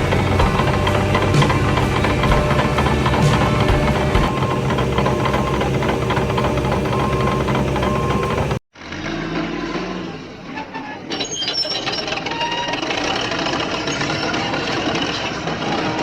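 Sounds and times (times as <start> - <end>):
heavy machinery engine running: 0.0 - 8.6
machine engine: 0.0 - 9.7, 12.7 - 16.0
metal squealing and clanking: 0.0 - 16.0.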